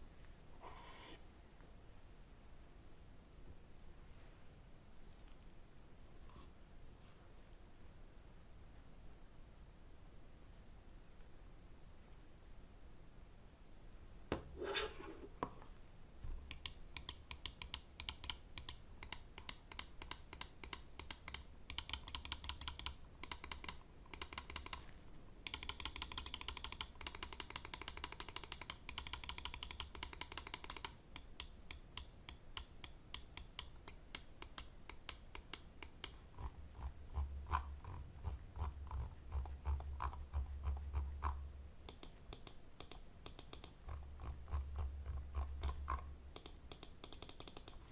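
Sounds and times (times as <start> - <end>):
mouse buttons clicking: 16.4 - 36.2, 39.3 - 47.9.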